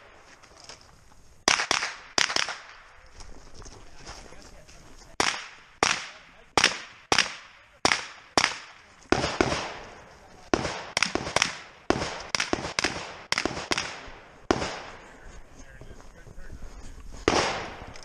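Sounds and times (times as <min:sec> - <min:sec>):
rifle shots echoing: 0:01.4 - 0:03.0, 0:05.2 - 0:15.2, 0:17.2 - 0:18.0.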